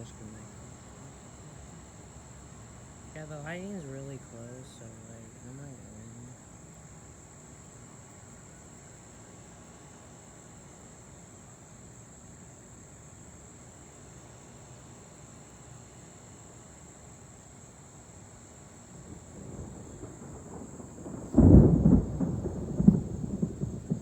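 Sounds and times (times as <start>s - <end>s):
thunder rumbling: 3.2s - 6.7s, 19.0s - 24.0s
thunder crack: 19.1s - 24.0s.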